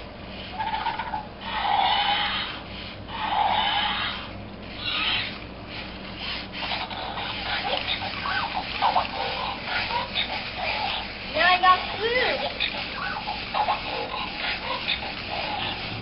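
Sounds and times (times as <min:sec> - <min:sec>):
toy dinosaur electronic calls: 0:00.5 - 0:05.4, 0:11.8 - 0:15.9.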